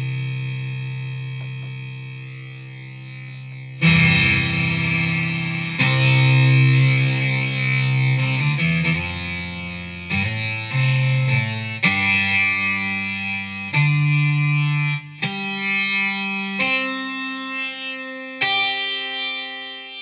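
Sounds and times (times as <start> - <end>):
synth guitar notes: 1.5 - 17.7.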